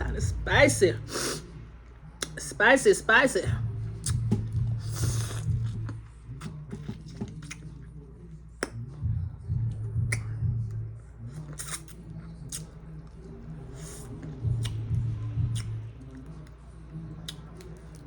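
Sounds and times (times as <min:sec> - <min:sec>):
wet lip smacking and chewing: 0:01.8 - 0:02.4, 0:03.8 - 0:08.0, 0:09.8 - 0:10.4, 0:11.2 - 0:18.0.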